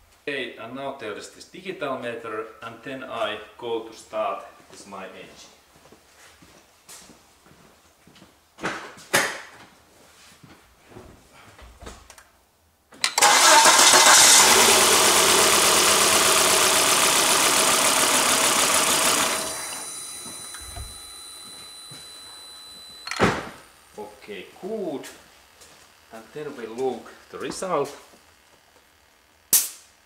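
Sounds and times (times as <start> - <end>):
engine cranking by starter: 13.0 - 23.2.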